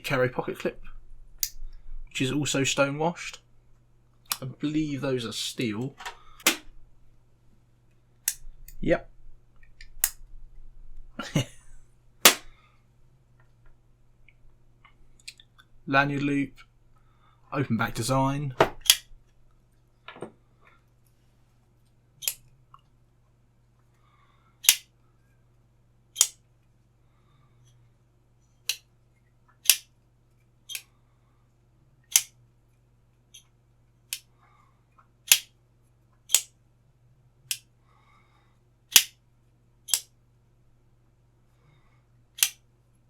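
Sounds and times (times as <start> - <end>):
folding knife blade snapping clicks: 8.2 - 8.8, 18.8 - 19.0, 24.6 - 24.8, 26.2 - 26.4, 29.6 - 29.9, 30.7 - 30.9, 32.1 - 32.3, 35.3 - 35.5, 36.3 - 36.5, 38.9 - 39.2, 39.9 - 40.1, 42.4 - 42.6.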